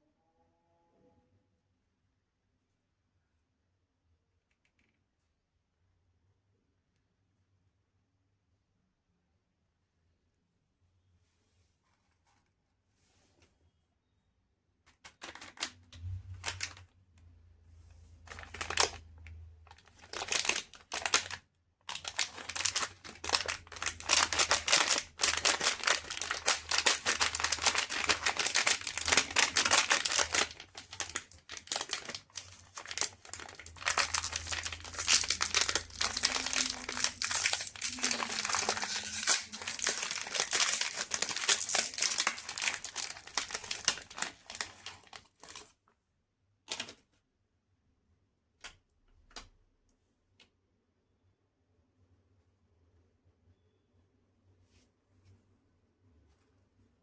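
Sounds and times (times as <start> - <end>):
wrapper crinkling: 15.0 - 16.9, 18.2 - 45.7.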